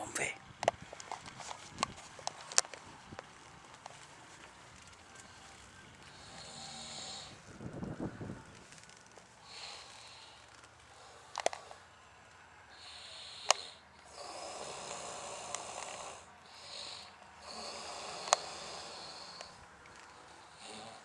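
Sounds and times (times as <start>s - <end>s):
man snoring heavily: 6.1s - 7.6s, 9.4s - 11.9s, 12.7s - 21.0s
sharp clicks: 13.4s - 13.7s.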